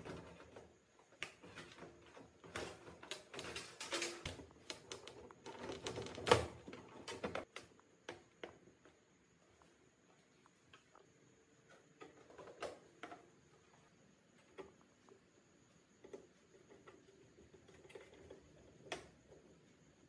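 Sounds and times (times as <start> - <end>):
small hard parts clicking and scraping: 0.0 - 7.8, 16.0 - 19.4.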